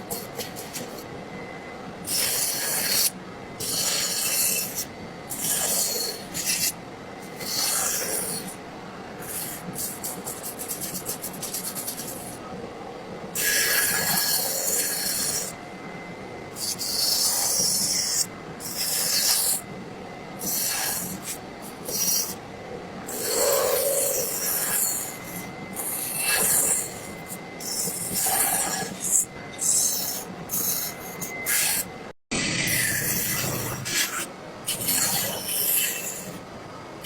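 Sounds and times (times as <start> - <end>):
tool scraping wood: 32.7 - 36.4.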